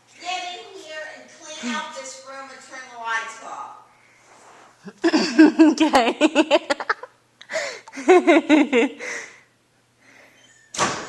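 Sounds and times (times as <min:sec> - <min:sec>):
girl's high-pitched voice: 0:00.2 - 0:03.8.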